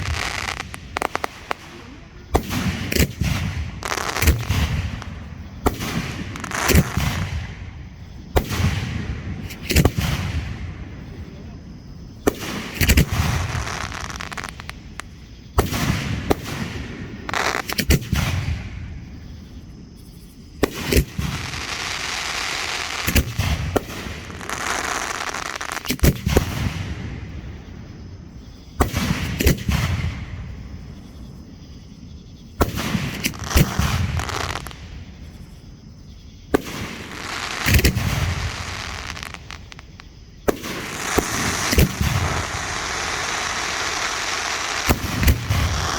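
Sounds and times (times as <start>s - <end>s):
fireworks hiss: 0.0s - 7.7s, 12.2s - 18.6s, 20.6s - 27.2s, 32.6s - 35.1s, 36.5s - 45.9s
fireworks bangs: 0.0s - 19.7s, 20.6s - 31.6s, 32.5s - 35.5s, 36.5s - 45.9s.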